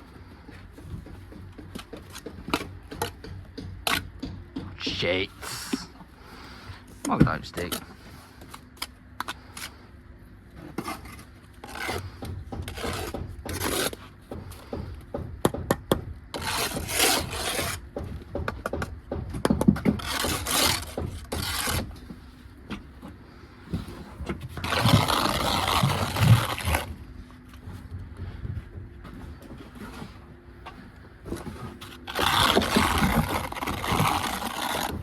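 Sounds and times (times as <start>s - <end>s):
trowel scraping mortar on brick: 10.6s - 14.1s, 16.3s - 17.9s, 19.7s - 22.2s, 23.8s - 27.0s, 31.4s - 35.0s.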